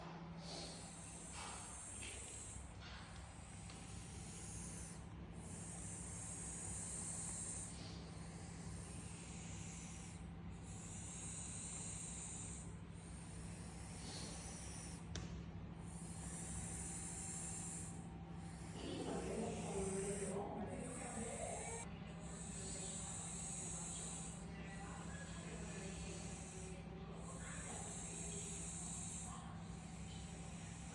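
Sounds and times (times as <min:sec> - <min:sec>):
cat snoring: 0:00.4 - 0:02.7, 0:03.3 - 0:15.1, 0:15.8 - 0:30.9.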